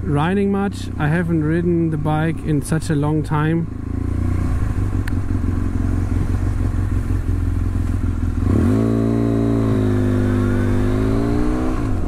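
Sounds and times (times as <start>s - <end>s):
motorcycle engine running: 0.0s - 12.0s
wind noise: 4.5s - 7.3s.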